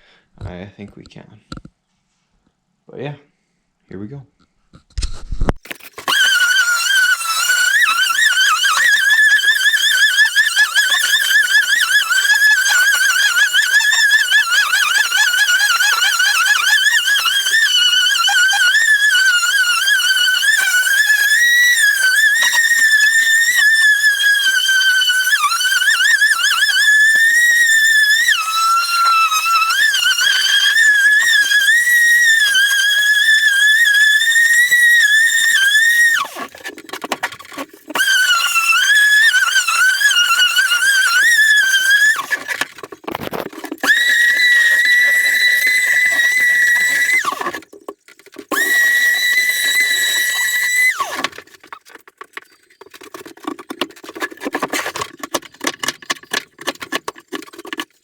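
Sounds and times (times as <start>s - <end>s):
electric sander motor whining: 5.8s - 47.7s, 48.4s - 51.4s.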